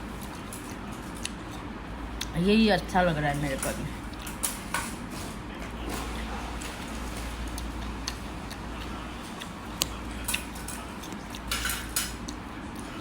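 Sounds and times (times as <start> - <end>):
steady low hum: 0.0 - 13.0
cutlery clicking against a plate: 9.9 - 12.4.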